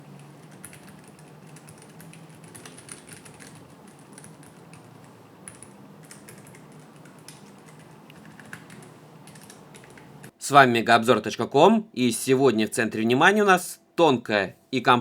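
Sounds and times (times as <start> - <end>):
mechanical keyboard typing: 0.1 - 10.3.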